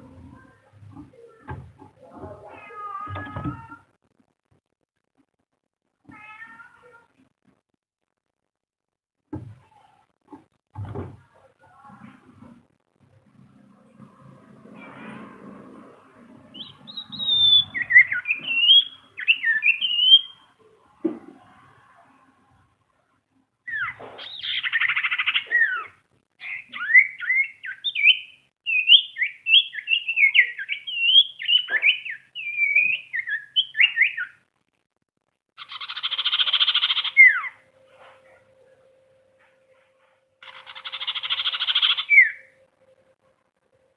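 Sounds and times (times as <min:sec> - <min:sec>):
bird singing high whistled notes: 0:16.6 - 0:20.4, 0:26.4 - 0:34.3, 0:35.7 - 0:37.6, 0:40.9 - 0:42.6.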